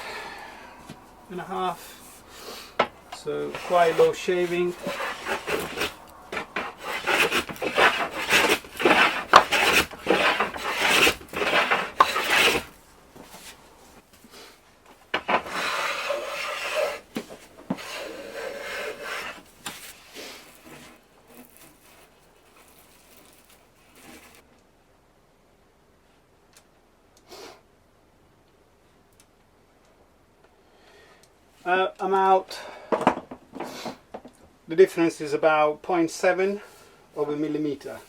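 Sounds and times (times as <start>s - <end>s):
hand plane strokes on wood: 1.4s - 13.6s, 15.2s - 22.1s.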